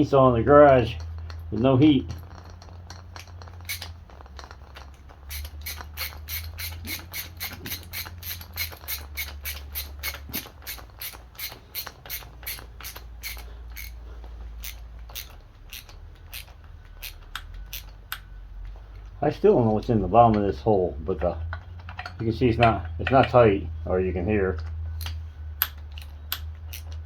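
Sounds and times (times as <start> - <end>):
hand tool ratcheting clicks: 0.0 - 18.3, 25.0 - 27.0
steady low hum: 0.0 - 27.0.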